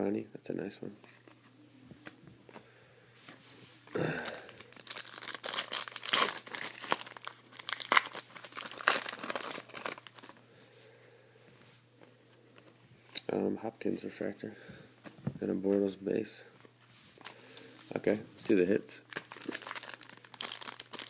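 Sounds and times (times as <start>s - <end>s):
wrapper crinkling and tearing: 4.2s - 10.4s, 19.1s - 21.0s.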